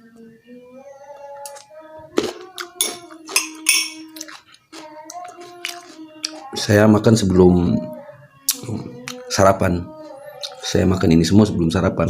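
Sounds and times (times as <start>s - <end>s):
spoon clinking against glass: 2.8s - 4.4s.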